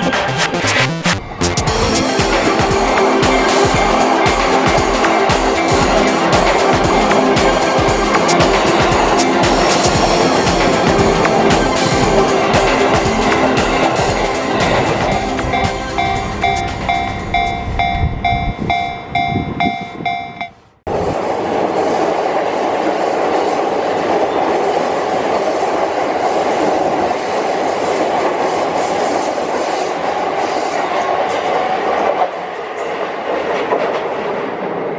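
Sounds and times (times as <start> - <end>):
train running past: 0.0 - 34.9
level-crossing warning bell: 1.2 - 20.7.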